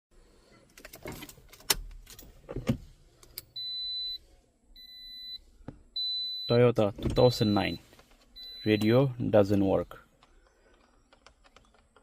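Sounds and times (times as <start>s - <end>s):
car electronic warning beeps: 3.5s - 9.2s.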